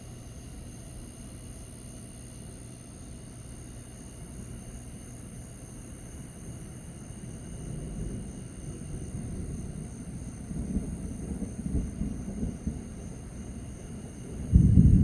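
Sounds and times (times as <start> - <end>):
distant thunder rumbling: 7.6 - 15.0.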